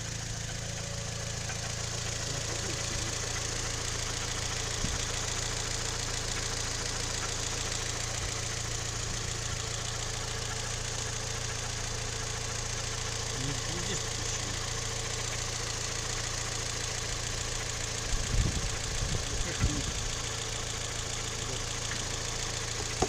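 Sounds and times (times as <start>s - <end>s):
engine idling with knocking tick: 0.0s - 23.0s.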